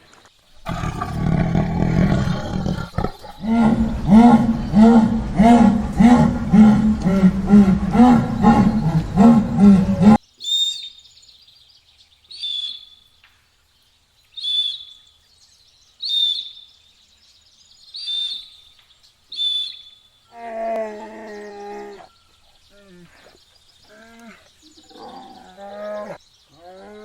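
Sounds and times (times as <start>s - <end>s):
loud pulsing animal call: 0.6s - 10.2s
low drawn-out animal call: 0.6s - 10.2s.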